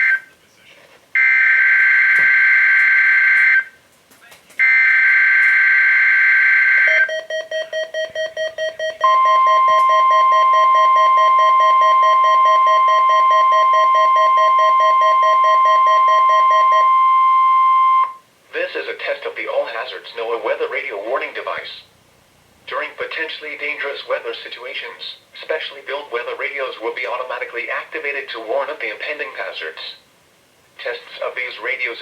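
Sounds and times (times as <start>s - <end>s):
steady warning alarm tone: 1.2s - 3.8s, 4.6s - 18.2s
rapid low beeps: 6.9s - 18.2s.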